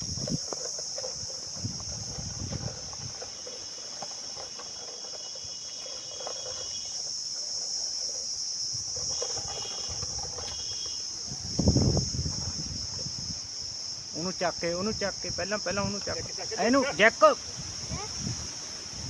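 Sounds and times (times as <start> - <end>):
faint knocks and scraping: 0.0 - 13.3
crickets chirping: 0.0 - 19.0.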